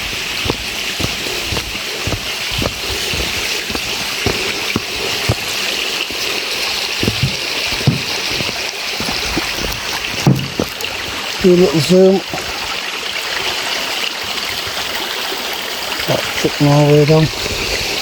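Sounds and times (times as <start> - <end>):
footsteps thudding: 0.0 - 10.9
stream rushing over rocks: 0.0 - 18.0.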